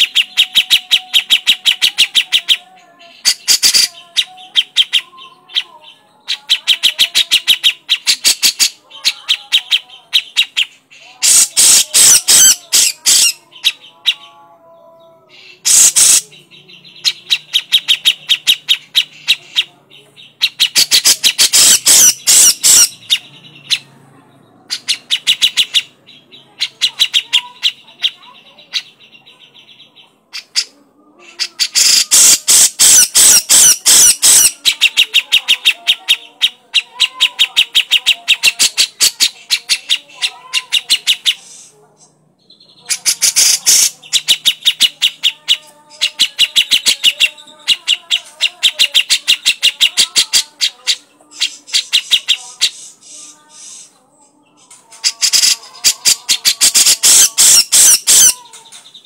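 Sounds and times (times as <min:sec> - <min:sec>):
bird chattering call: 0:03.2 - 0:05.7, 0:06.3 - 0:14.3, 0:15.6 - 0:19.7, 0:20.3 - 0:23.9, 0:31.3 - 0:41.7, 0:42.5 - 0:53.0, 0:55.0 - 0:59.0
buzzy bird trills: 0:03.2 - 0:14.3, 0:15.5 - 0:19.6, 0:20.4 - 0:23.8, 0:30.4 - 0:41.7, 0:54.7 - 0:59.0.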